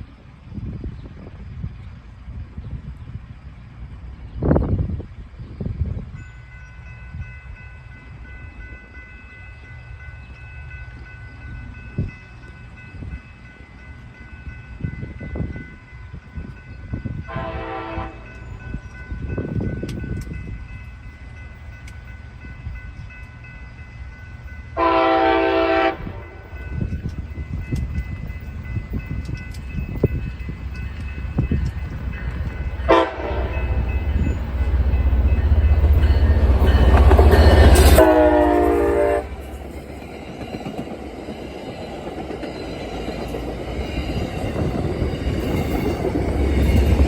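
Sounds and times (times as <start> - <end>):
low rumble of passing train: 0.0 - 47.0
locomotive air horn blasts: 17.3 - 18.3, 24.8 - 26.5, 32.8 - 33.8, 37.7 - 39.4.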